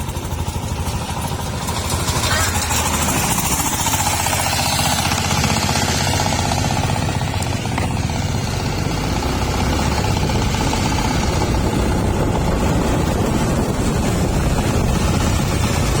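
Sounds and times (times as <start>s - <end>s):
machine engine chugging: 0.0s - 8.8s.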